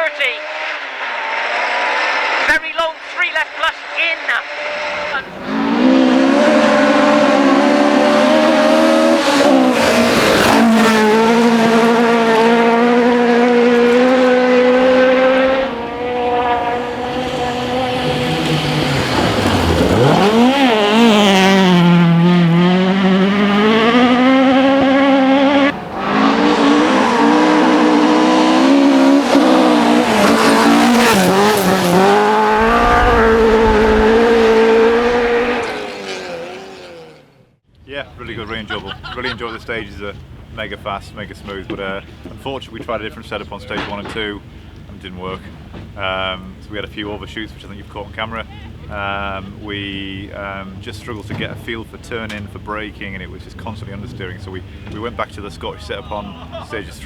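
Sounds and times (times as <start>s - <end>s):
rally car engine at high revs: 0.0s - 37.6s.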